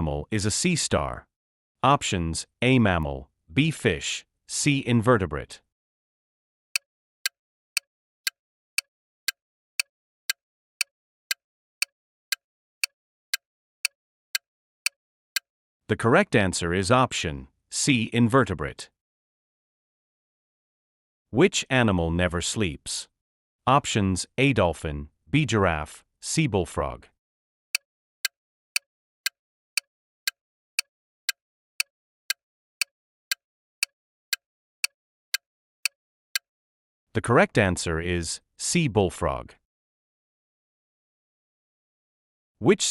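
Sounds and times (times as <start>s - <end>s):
timer ticking clicks: 7.2s - 15.5s, 28.2s - 36.0s.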